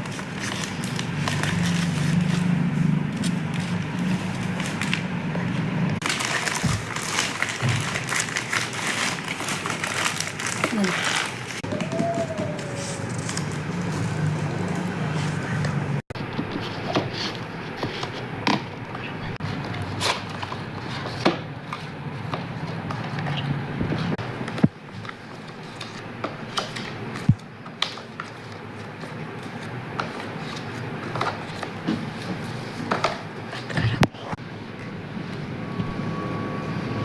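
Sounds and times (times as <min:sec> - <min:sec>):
packaging clicks and rustles: 0:00.0 - 0:02.4, 0:06.0 - 0:13.7.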